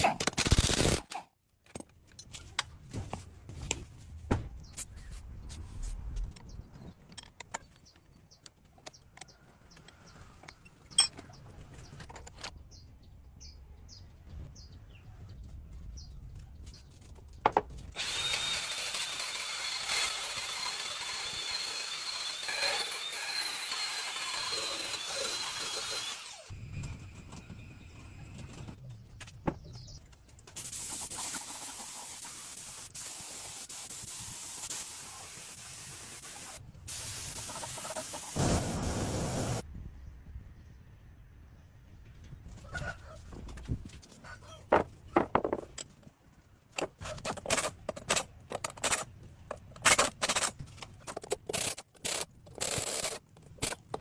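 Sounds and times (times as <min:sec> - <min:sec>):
power tool whining: 0:18.0 - 0:26.6.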